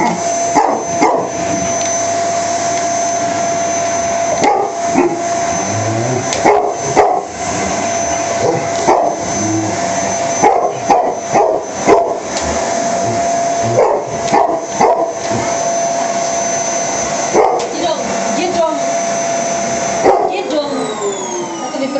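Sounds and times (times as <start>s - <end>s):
dog barking: 0.0s - 1.3s, 4.4s - 5.2s, 6.4s - 7.3s, 8.4s - 9.2s, 10.4s - 12.2s, 13.7s - 15.2s, 17.3s - 17.7s, 20.0s - 20.4s
vacuum cleaner motor whine: 0.0s - 21.9s.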